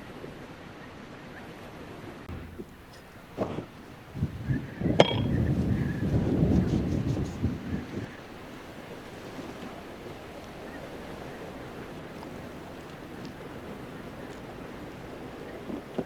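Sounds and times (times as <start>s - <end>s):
snowstorm wind blowing: 2.3s - 16.0s
faint ticks: 6.6s - 16.0s.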